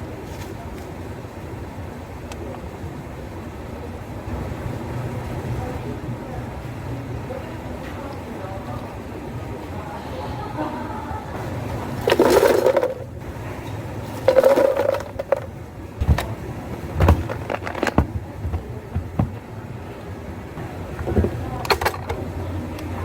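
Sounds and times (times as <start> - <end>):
low steady hum: 0.0 - 23.0
cups and utensils clinking: 11.7 - 16.3.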